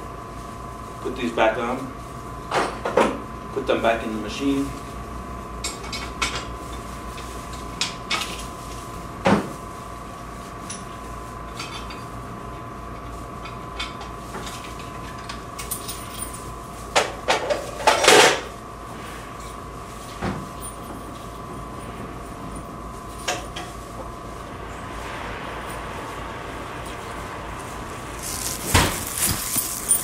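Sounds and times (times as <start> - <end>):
steady hum: 17.8 - 30.0
coin tubes clattering in vending machine: 28.2 - 30.0.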